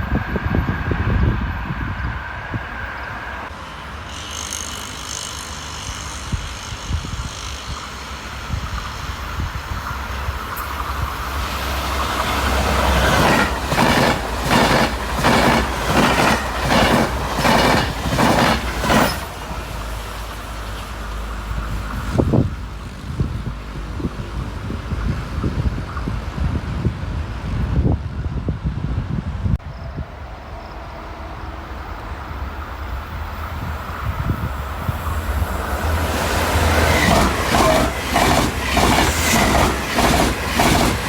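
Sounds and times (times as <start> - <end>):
train rumbling past: 0.0 - 41.0
train wheels clacking over rail joints: 12.0 - 19.7, 36.2 - 41.0.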